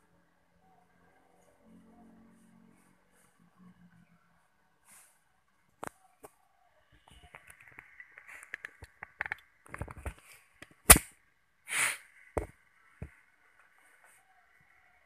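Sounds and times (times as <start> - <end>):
short hiss: 11.7 - 12.2.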